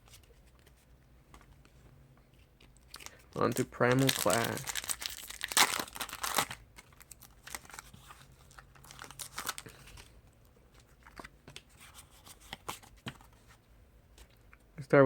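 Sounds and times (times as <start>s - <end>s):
cards clicking and rustling: 2.4s - 6.6s
foil wrapper crinkling: 2.8s - 10.1s.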